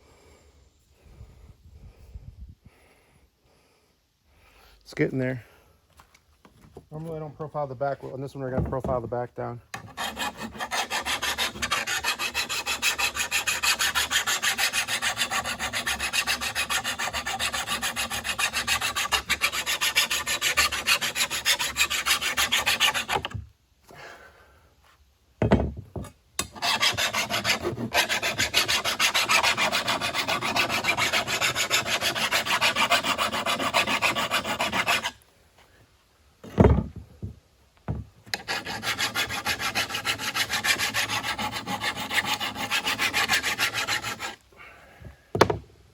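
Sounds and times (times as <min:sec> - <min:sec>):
file rasping on steel blade: 0:09.7 - 0:23.4, 0:26.4 - 0:35.2, 0:38.3 - 0:44.4.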